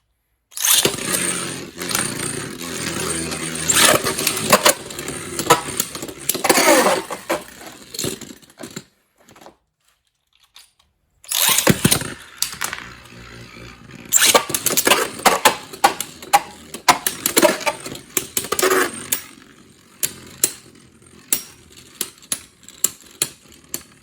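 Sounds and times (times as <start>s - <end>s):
spinning tops whirring: 0.6s - 8.4s, 11.3s - 24.0s
spinning top launch: 3.1s - 7.8s, 11.3s - 19.3s
spinning tops clashing: 3.1s - 8.2s, 11.3s - 13.0s, 14.1s - 19.3s.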